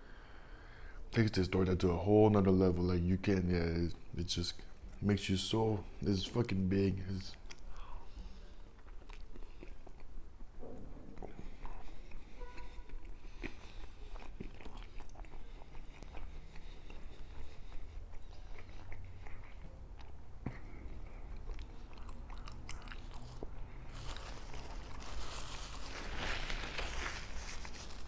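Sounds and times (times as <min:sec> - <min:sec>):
biting and chewing sandwich: 0:07.3 - 0:28.0.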